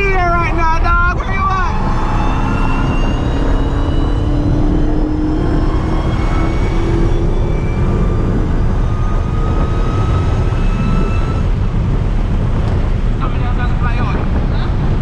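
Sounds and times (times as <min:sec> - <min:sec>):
car engine cruising with whine: 0:00.0 - 0:15.0.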